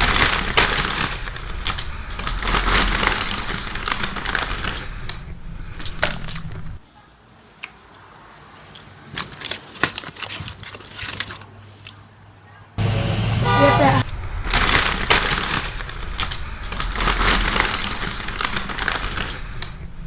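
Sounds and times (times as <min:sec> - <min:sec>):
dense crunching and crackling: 0:07.5 - 0:12.0, 0:14.6 - 0:19.5
sharp clicks and cracks: 0:14.7 - 0:19.8.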